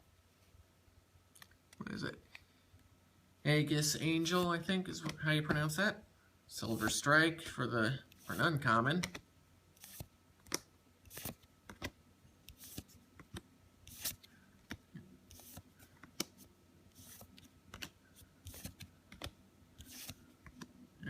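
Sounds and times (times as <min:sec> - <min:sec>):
cards sliding over each other: 0:09.8 - 0:20.7.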